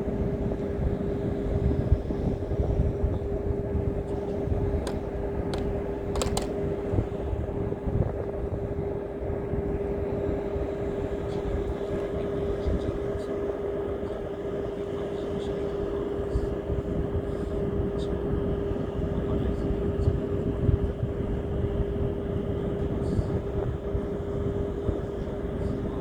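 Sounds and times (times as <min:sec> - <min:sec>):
steady motor hum: 0:00.0 - 0:26.0
sharp clicks: 0:04.9 - 0:06.6.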